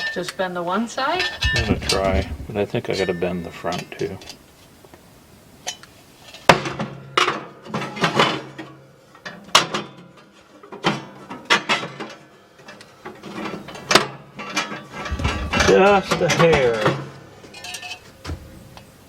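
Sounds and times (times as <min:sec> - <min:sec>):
metal parts clanking and rattling: 0:01.1 - 0:02.4, 0:05.7 - 0:18.4.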